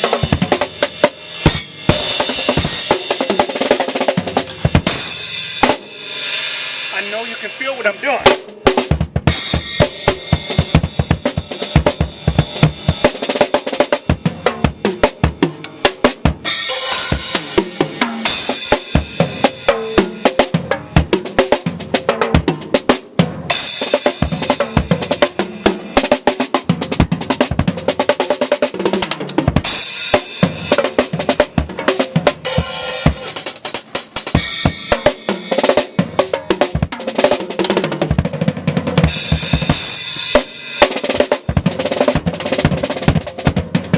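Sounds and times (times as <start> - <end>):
cymbals: 0.0 - 15.0, 15.6 - 21.0, 29.6 - 37.3, 38.9 - 43.9.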